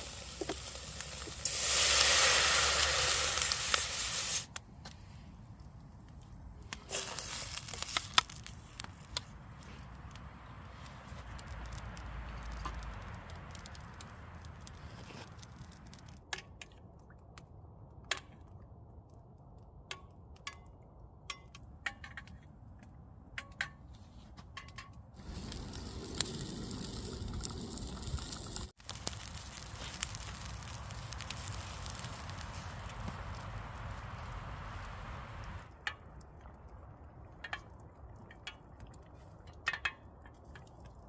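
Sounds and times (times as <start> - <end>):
wood fire crackling: 0.0 - 16.3, 25.2 - 41.0
fire pops and snaps: 0.0 - 20.6, 24.6 - 41.0.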